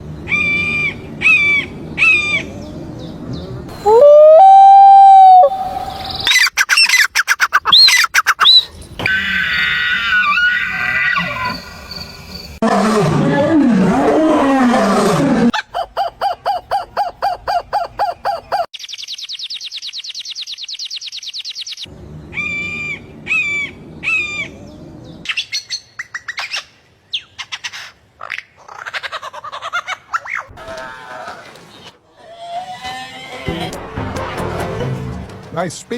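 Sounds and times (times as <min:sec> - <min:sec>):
low gliding call: 0:03.7 - 0:06.3
bird-like chirps: 0:15.8 - 0:28.6.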